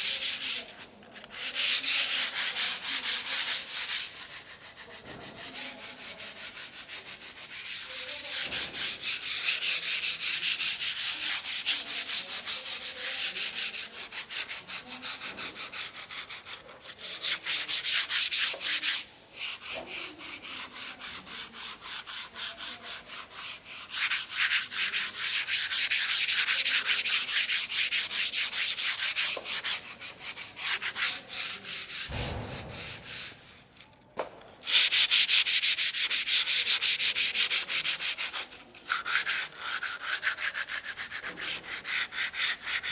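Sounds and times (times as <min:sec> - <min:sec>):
sandpaper rubbing on surface: 0:00.0 - 0:33.9, 0:34.6 - 0:42.9
short low bump: 0:32.1 - 0:33.3.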